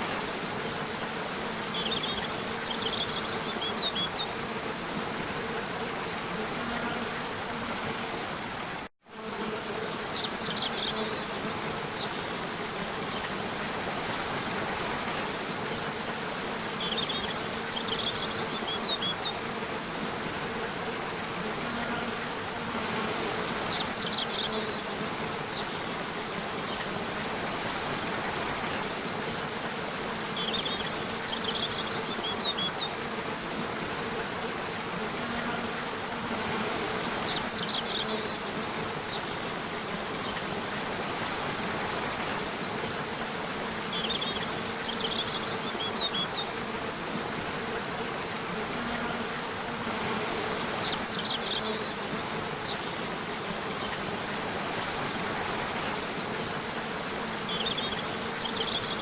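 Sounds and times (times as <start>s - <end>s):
running water hiss: 0.0s - 59.0s.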